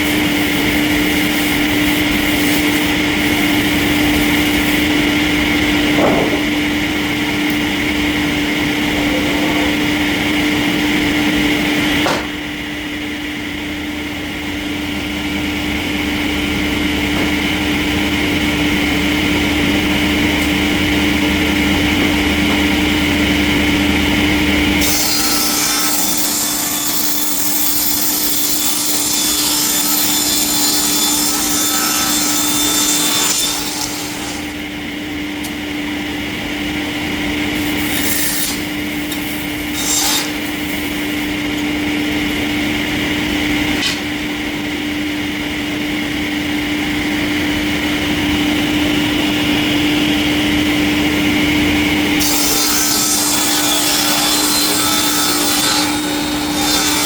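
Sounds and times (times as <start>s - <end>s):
saw cutting through wood: 0.0s - 6.6s, 24.8s - 34.6s, 37.6s - 41.6s, 52.2s - 57.0s
machine hum: 0.0s - 28.1s.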